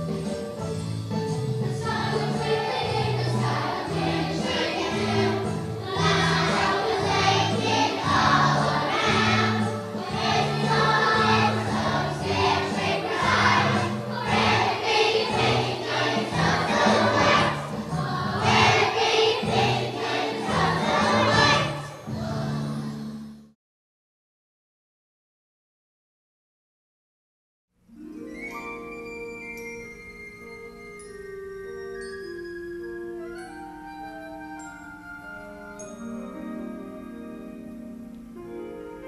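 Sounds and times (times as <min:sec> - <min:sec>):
instrumental accompaniment: 0:00.0 - 0:23.2, 0:27.9 - 0:39.0
choir singing: 0:01.6 - 0:23.4.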